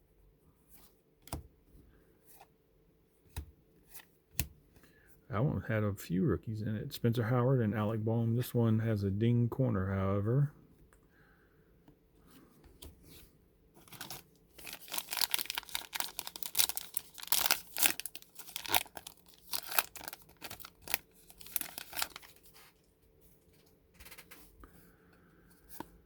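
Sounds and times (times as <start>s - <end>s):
plastic wrapper tearing and crinkling: 13.8s - 22.7s.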